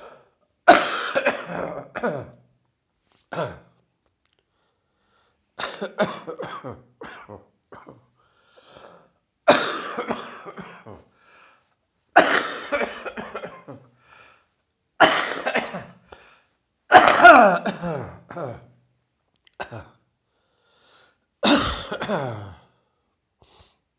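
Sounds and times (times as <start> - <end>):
person coughing harshly: 0.0 - 2.5, 3.3 - 3.8, 5.6 - 8.1, 9.5 - 11.1, 12.2 - 13.9, 15.0 - 16.1, 16.9 - 18.8, 19.6 - 20.0, 21.4 - 22.7.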